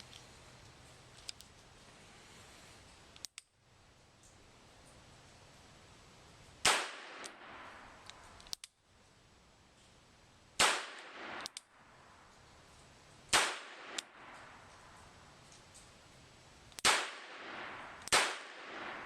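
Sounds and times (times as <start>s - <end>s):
sharp clicks: 8.0s - 8.8s, 11.4s - 11.7s.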